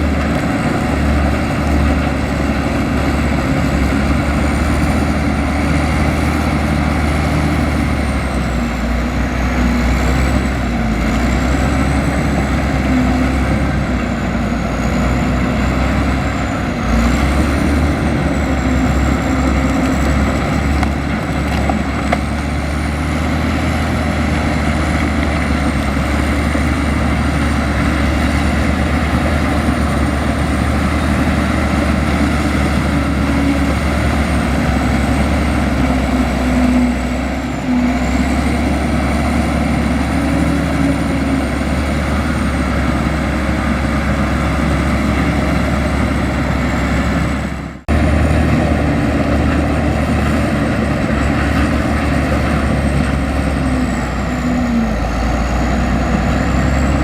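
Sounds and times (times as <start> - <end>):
bulldozer diesel engine running: 0.0 - 57.0.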